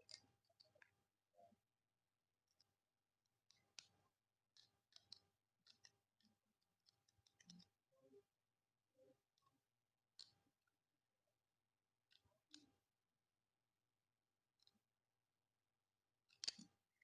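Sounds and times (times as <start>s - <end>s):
plastic parts clicking together: 16.3s - 16.8s.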